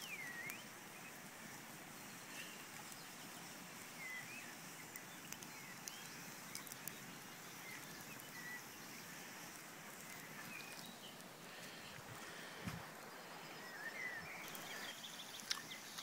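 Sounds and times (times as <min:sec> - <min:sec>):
small birds chirping: 0:00.0 - 0:16.0
steady outdoor hiss: 0:00.0 - 0:16.0
faint clicks: 0:04.9 - 0:07.1.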